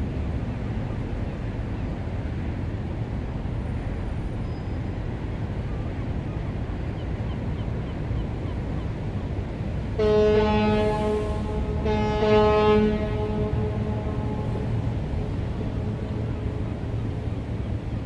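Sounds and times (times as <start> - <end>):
ship engine and water rumble: 0.0 - 18.0
ship's horn blast: 9.8 - 18.0.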